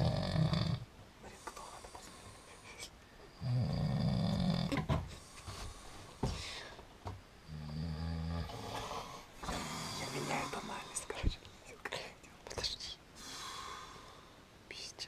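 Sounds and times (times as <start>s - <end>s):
man snoring: 0.0s - 0.8s, 3.4s - 4.8s, 7.5s - 10.9s.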